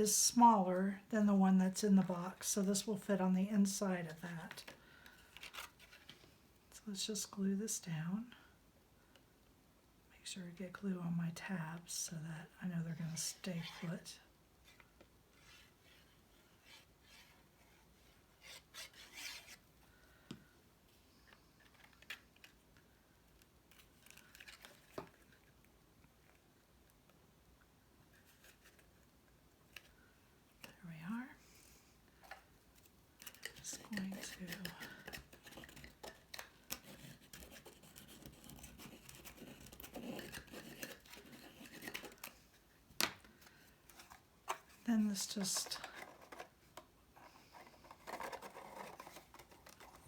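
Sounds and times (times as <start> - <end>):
cardstock rustling and rubbing: 43.8 - 50.0.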